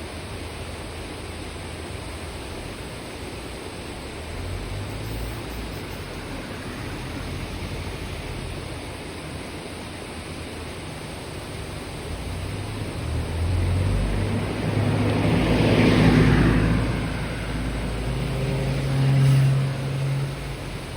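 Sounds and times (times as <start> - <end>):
car approaching rumble: 2.5 - 9.1, 11.5 - 20.9.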